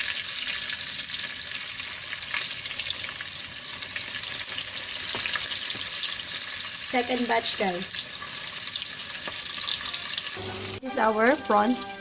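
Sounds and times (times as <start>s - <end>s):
food deep-frying in hot oil: 0.0s - 10.8s.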